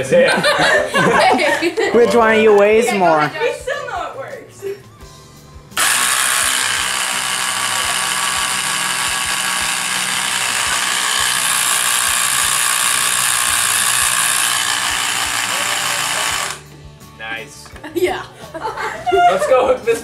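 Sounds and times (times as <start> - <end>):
electric motor gearbox whirring: 5.8 - 16.6.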